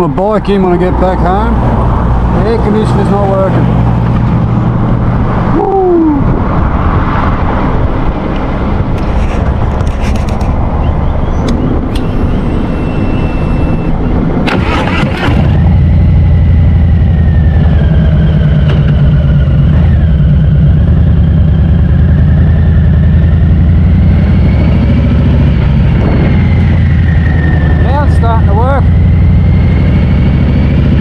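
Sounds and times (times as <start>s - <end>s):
faint wavering whistle: 12.1s - 14.0s
motorcycle engine running: 12.2s - 31.0s.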